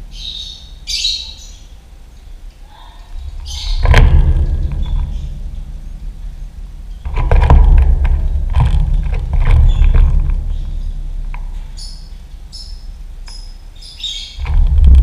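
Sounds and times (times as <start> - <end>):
lovebird chirping: 0.0 - 4.0, 11.6 - 14.4
loud low rumble with knocks: 3.1 - 15.0.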